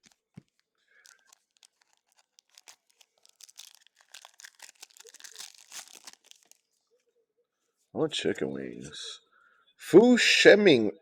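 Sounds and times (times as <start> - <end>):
wrapper crinkling: 0.0 - 6.8.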